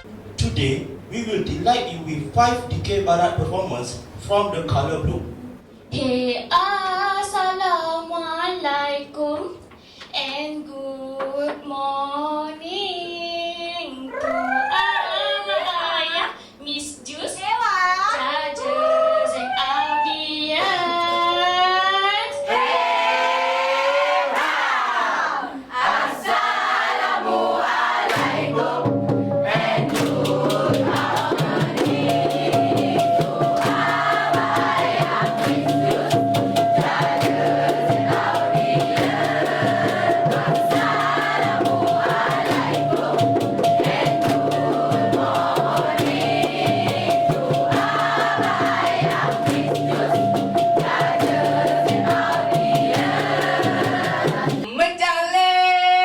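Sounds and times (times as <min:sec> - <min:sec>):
group singing: 0:22.4 - 0:54.7
fast percussion and drum beat: 0:27.6 - 0:54.7
steady high tone: 0:29.0 - 0:54.1.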